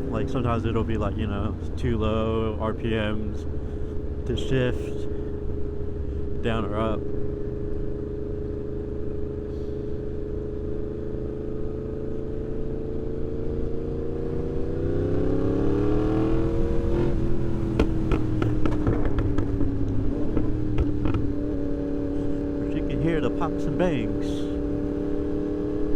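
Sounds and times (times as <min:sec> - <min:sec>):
motorcycle engine revving: 0:00.0 - 0:25.9
exhaust pops and bangs: 0:17.7 - 0:21.4.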